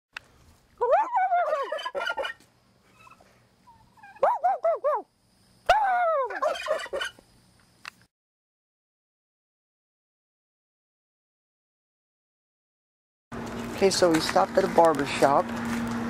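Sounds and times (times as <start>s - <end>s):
rapid warbling calls: 0.8s - 2.4s, 6.3s - 7.2s.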